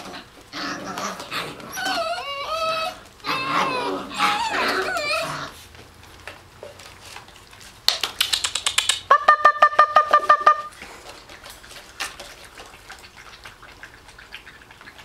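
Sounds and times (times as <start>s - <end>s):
person making high-pitched pop calls: 8.0s - 10.7s.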